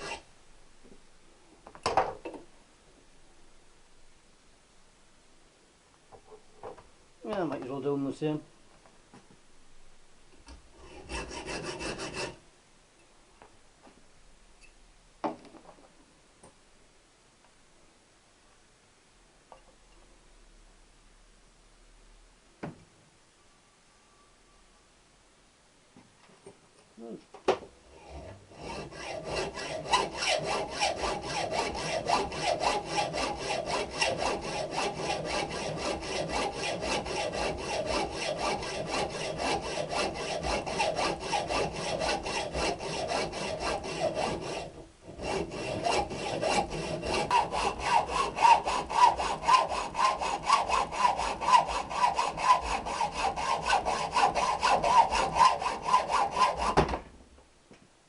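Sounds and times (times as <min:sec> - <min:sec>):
hand saw cutting metal pipe: 0:00.0 - 0:00.2, 0:10.8 - 0:12.4, 0:28.0 - 0:56.8.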